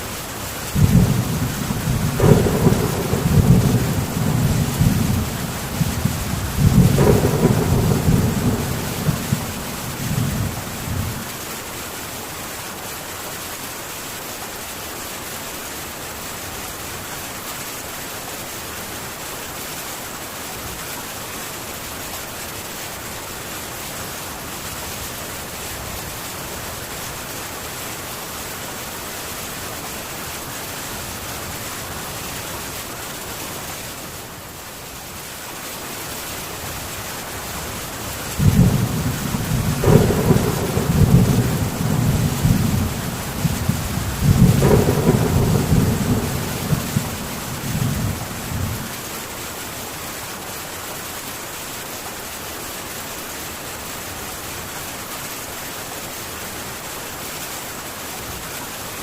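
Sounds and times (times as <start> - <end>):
heavy rain on a tin roof: 0.0 - 59.0
thunder rumbling: 0.7 - 11.3, 38.3 - 49.1.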